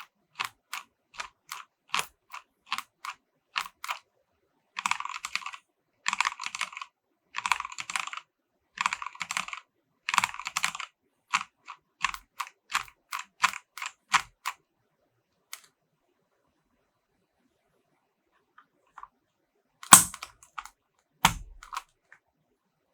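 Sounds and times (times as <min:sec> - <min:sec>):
mechanical keyboard typing: 0:00.0 - 0:04.0, 0:04.8 - 0:08.2, 0:08.8 - 0:14.6, 0:19.8 - 0:20.6, 0:21.2 - 0:21.8.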